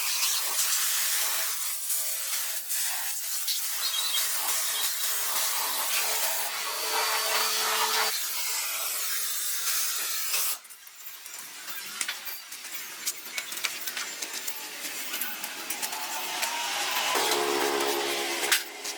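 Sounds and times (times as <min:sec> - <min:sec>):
steady hissing spray: 0:00.0 - 0:10.6
scattered clicks and taps: 0:10.8 - 0:18.9.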